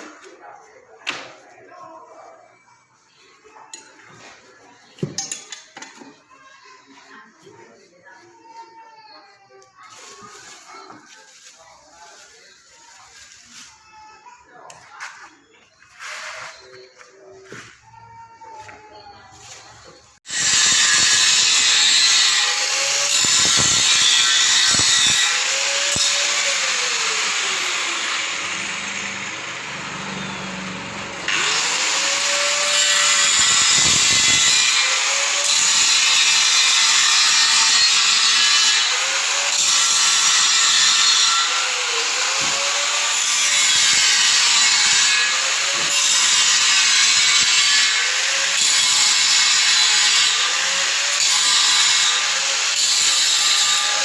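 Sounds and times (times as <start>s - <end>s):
power tool cutting: 20.2s - 54.0s.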